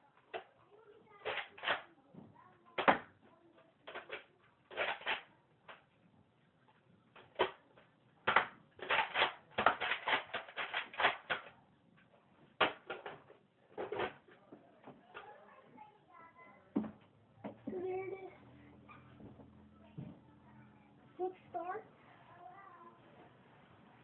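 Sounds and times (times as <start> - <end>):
toy blaster plastic clacks: 1.2 - 1.9, 3.8 - 5.8, 7.2 - 7.6, 8.2 - 11.5, 12.6 - 13.2.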